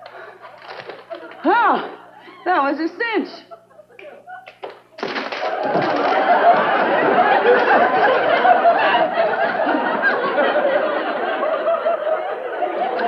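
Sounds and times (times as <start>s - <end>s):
audience laughing: 0.0s - 2.5s, 5.4s - 13.0s.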